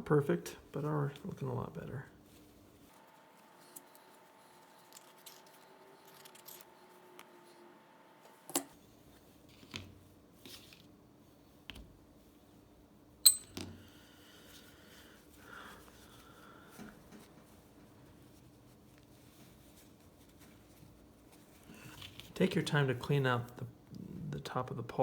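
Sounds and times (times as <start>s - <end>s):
small metal parts clicking: 4.7s - 6.7s.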